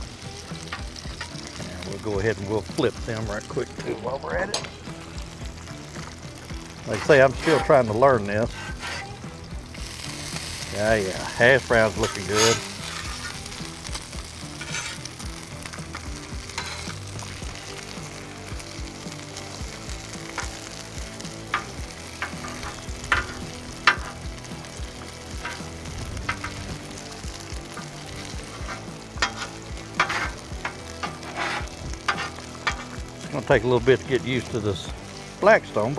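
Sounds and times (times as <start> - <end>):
food sizzling on a griddle: 0.0 - 35.9
metal utensil tapping and scraping: 0.5 - 1.9, 6.8 - 18.0, 19.4 - 33.4.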